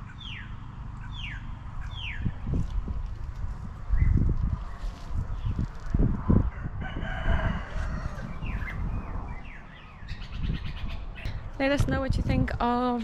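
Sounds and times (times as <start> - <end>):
small birds chirping: 0.0 - 6.0, 8.1 - 11.8
low rumbling bumps: 0.0 - 13.0
rooster crowing: 6.4 - 8.7.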